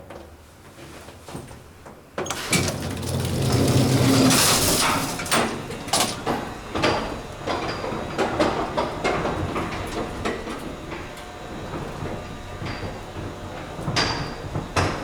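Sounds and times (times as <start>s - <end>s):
elevator clanks: 2.2s - 15.0s
elevator doors sliding shut: 2.2s - 15.0s
elevator hum and rush: 2.2s - 15.0s.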